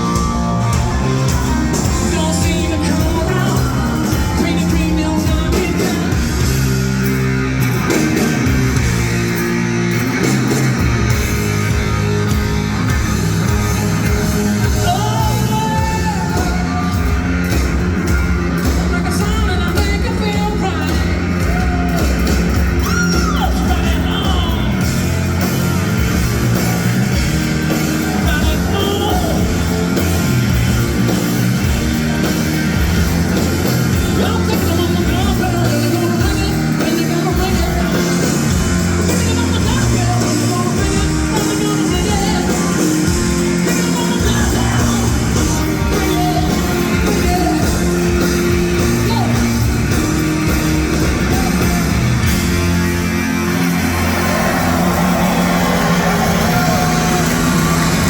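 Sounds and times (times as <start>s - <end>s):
person singing: 0.0s - 6.6s, 14.6s - 17.2s, 33.9s - 49.6s
live rock band playing: 0.0s - 58.0s.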